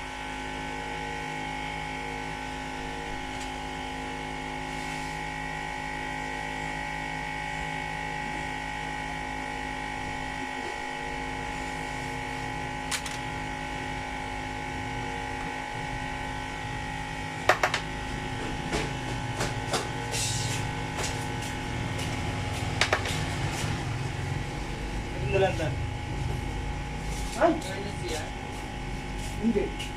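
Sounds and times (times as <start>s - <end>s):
electrical hum: 0.0s - 29.9s
small tools clicking and tapping: 17.5s - 17.8s, 22.8s - 23.3s.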